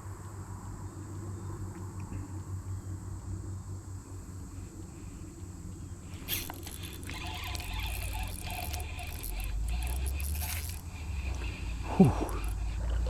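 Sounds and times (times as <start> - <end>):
reel ticking and rasping: 5.7 - 13.0
fishing reel click: 6.0 - 12.8.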